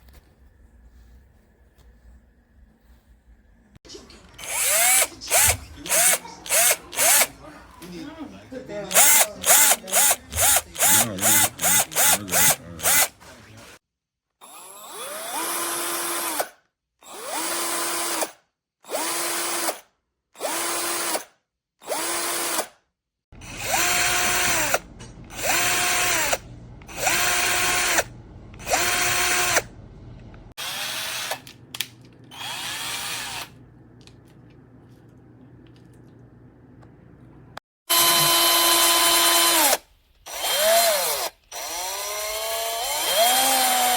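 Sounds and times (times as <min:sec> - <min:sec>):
cordless drill motor whining: 0:04.4 - 0:07.4, 0:08.9 - 0:13.2, 0:14.4 - 0:16.4, 0:17.1 - 0:18.2, 0:18.9 - 0:19.7, 0:20.4 - 0:21.2, 0:21.9 - 0:22.6, 0:23.4 - 0:31.6, 0:32.3 - 0:33.6, 0:37.9 - 0:43.9.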